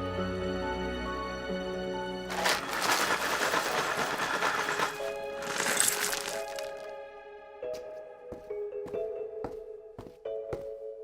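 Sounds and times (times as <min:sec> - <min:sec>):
background music with held notes: 0:00.0 - 0:11.0.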